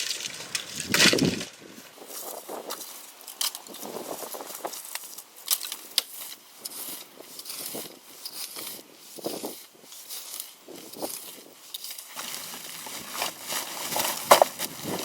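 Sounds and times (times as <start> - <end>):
rubbish rustling and crackling: 0.0 - 15.0.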